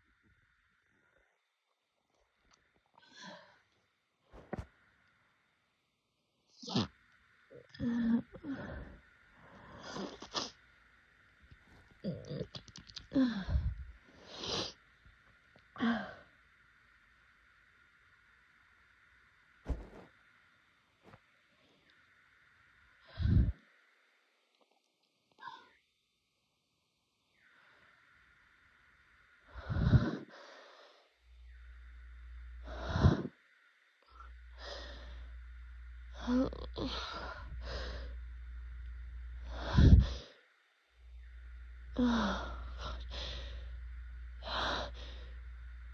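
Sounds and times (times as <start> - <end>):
soft breath: 4.3 - 4.7, 8.4 - 10.2, 19.7 - 20.1, 23.0 - 23.6, 29.5 - 31.1, 34.1 - 35.4, 36.2 - 38.3, 39.4 - 40.4, 42.0 - 43.8.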